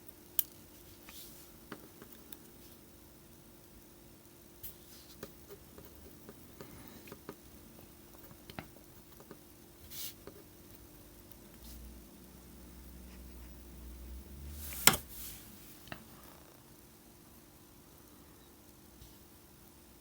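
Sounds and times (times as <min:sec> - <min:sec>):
faint steady hum: 0:00.0 - 0:20.0.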